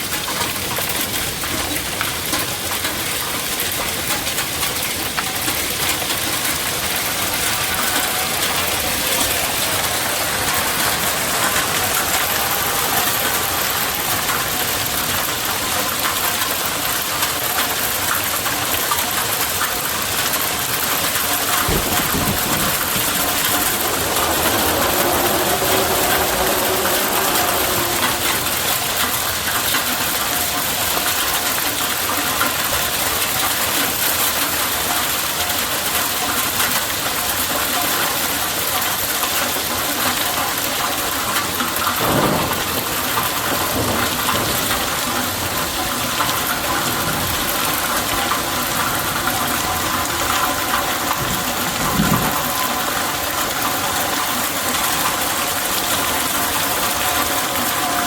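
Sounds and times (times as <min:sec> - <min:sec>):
rain hissing: 0:00.0 - 0:58.0
low thud: 0:21.6 - 0:23.9.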